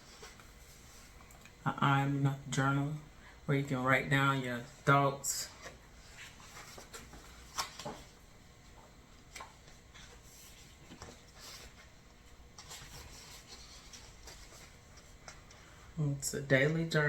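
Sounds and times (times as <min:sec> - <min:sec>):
paper rustling: 0:05.4 - 0:08.2, 0:08.8 - 0:15.8.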